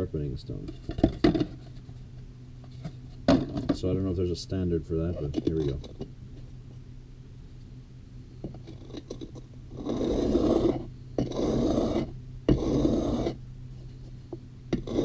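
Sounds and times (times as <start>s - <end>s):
chisel rasping on sharpening stone: 9.8s - 13.4s, 14.8s - 15.0s.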